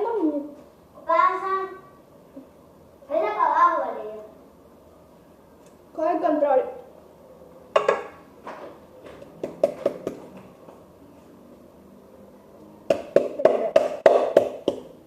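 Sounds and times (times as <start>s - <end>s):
pestle pounding in mortar: 12.9s - 14.9s.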